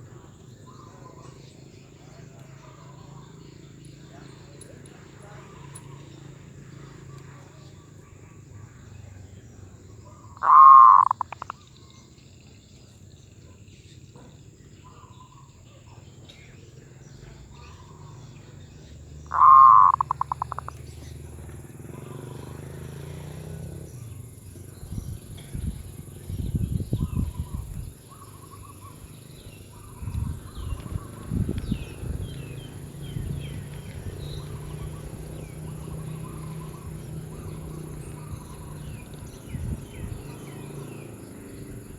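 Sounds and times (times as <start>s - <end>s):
dove cooing: 10.1s - 11.6s, 19.3s - 22.8s.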